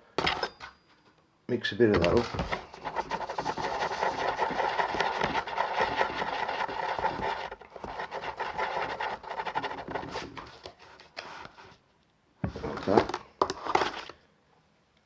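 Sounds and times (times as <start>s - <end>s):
glue being stirred and scraped: 2.0s - 11.7s.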